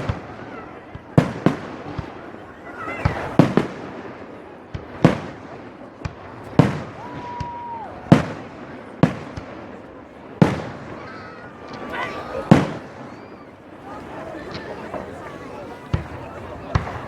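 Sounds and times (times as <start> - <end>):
fireworks bursting: 0.0 - 17.0.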